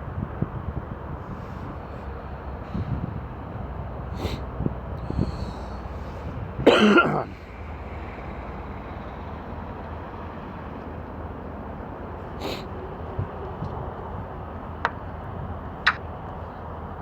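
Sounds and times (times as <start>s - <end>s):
man coughing: 6.6s - 7.3s.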